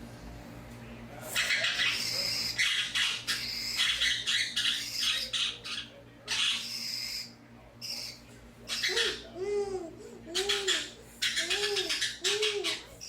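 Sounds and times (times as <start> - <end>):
budgerigars chattering: 1.3 - 9.3, 10.4 - 12.9.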